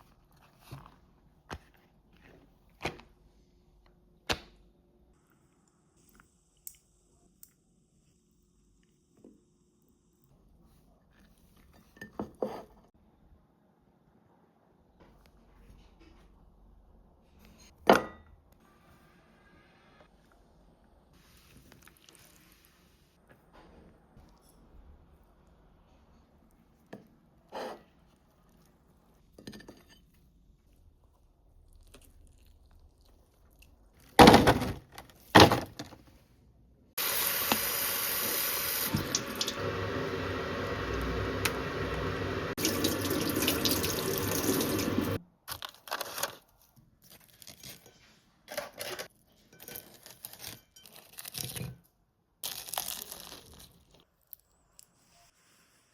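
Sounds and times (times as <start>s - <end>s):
tap running into sink: 38.8s - 39.6s.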